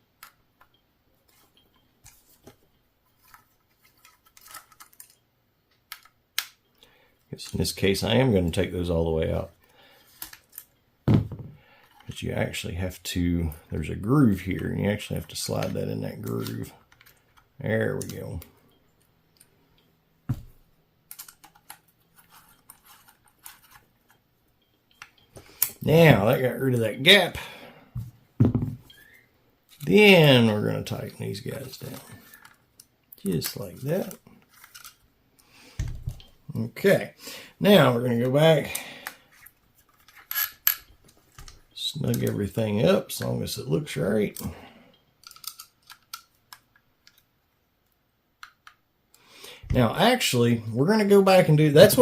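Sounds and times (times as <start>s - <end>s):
metal parts clicking and scraping: 3.1s - 5.2s, 21.1s - 25.8s, 31.3s - 35.1s, 38.2s - 42.4s, 45.2s - 47.3s
knock: 28.4s - 28.8s
metal clicks of screws and hex key: 45.2s - 47.2s.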